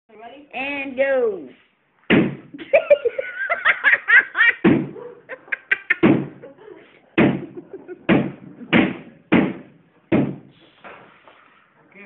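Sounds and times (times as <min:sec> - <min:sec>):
sledgehammer striking wall: 0:02.1 - 0:02.5, 0:08.1 - 0:10.5.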